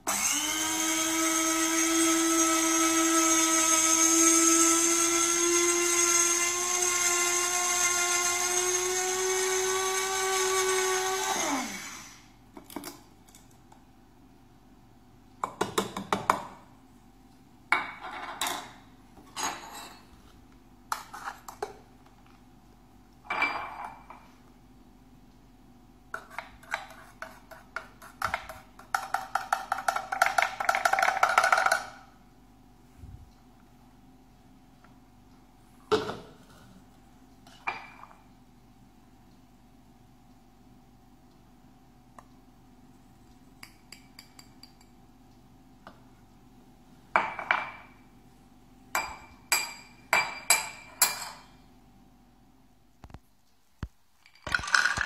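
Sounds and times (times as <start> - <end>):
glass clinking: 23.3 - 24.0, 49.0 - 51.5
coffee beans rattling in grinder: 29.0 - 32.0, 54.4 - 55.0.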